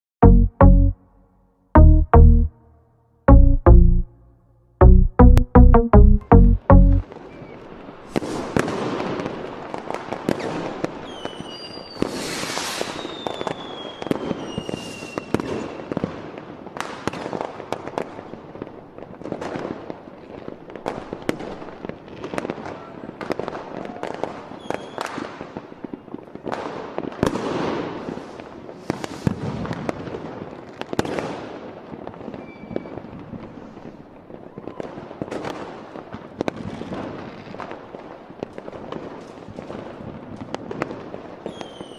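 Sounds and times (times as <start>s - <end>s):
fireworks bangs: 7.1s - 33.9s
whistling fireworks: 7.1s - 41.9s
firecracker cracks: 12.0s - 13.0s, 27.3s - 30.0s.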